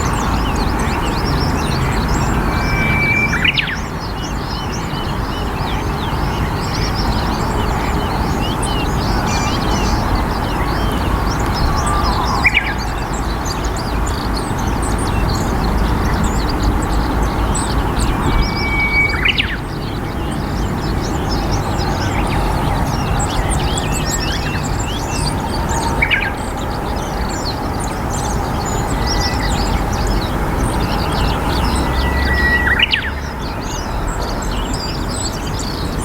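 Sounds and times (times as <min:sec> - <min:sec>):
low rushing noise: 0:00.0 - 0:13.8
whistled bird call: 0:00.0 - 0:14.0, 0:15.1 - 0:36.0
small birds chirping: 0:00.0 - 0:36.0.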